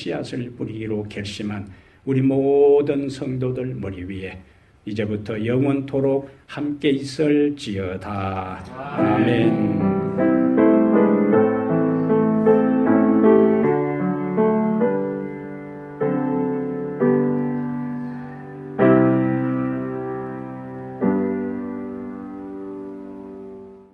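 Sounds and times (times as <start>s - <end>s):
slow piano chords: 8.6s - 23.9s.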